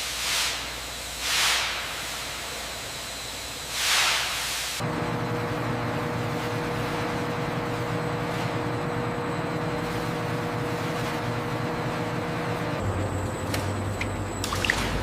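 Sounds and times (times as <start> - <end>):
constant machine tone: 4.8 - 15.0
machinery low hum: 4.8 - 15.0.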